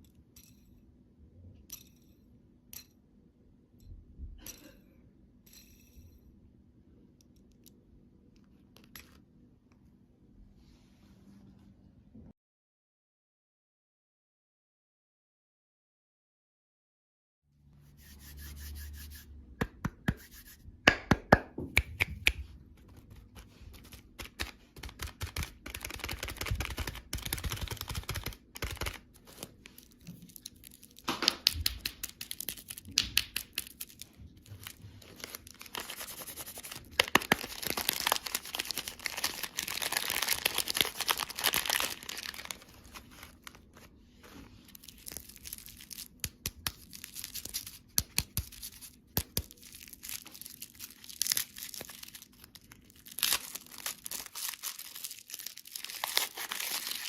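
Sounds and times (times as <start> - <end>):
plastic wrappers crinkling: 22.8 - 57.0.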